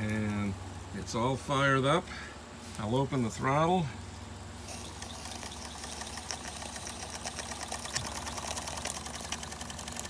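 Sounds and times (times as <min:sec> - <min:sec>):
toy steam engine clattering: 0:04.6 - 0:10.0.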